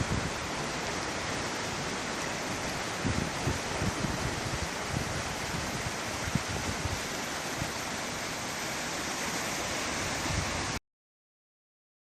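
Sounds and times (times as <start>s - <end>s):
wind thumping on microphone: 0.0s - 0.8s, 1.5s - 7.9s, 9.9s - 10.8s
river water rushing: 0.0s - 10.8s.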